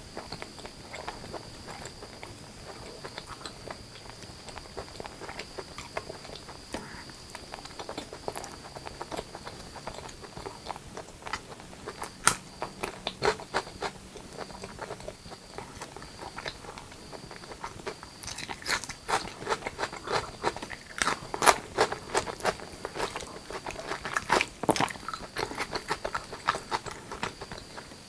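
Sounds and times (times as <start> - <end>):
chewing and mouth sounds: 0.1 - 28.0.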